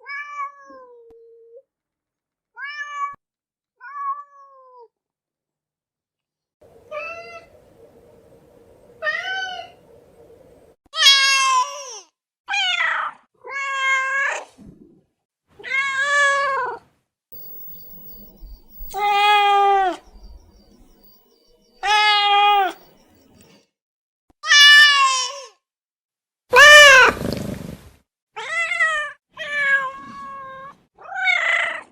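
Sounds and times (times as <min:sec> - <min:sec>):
cats meowing: 0:17.4 - 0:20.8, 0:21.8 - 0:22.8.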